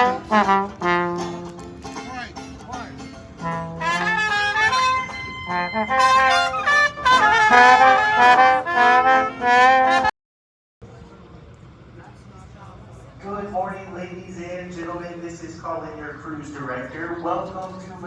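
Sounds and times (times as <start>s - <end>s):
brass band playing jazz: 0.0s - 2.6s, 3.3s - 10.1s.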